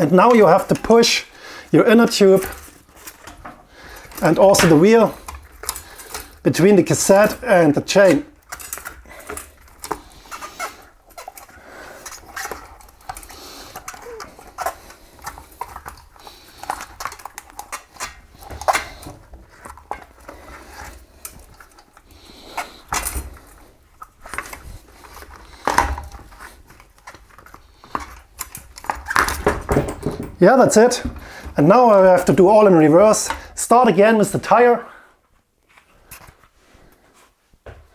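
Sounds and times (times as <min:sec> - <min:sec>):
heavy knocks: 0:29.4 - 0:31.6.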